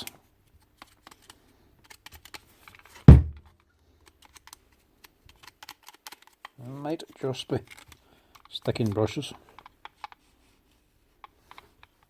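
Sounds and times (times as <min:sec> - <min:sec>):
sharp loud knock: 0:03.1 - 0:03.4
small parts clicking: 0:04.0 - 0:10.2.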